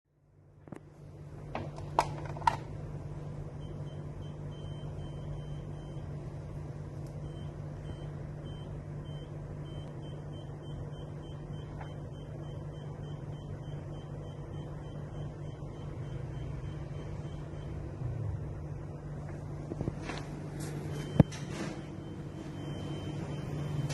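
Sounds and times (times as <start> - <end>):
low hum: 0.2 - 23.9
alarm keypad beeps: 20.9 - 23.9.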